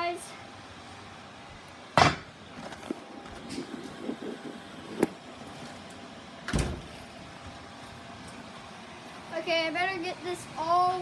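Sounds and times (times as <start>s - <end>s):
heavier thump: 6.5s - 6.9s.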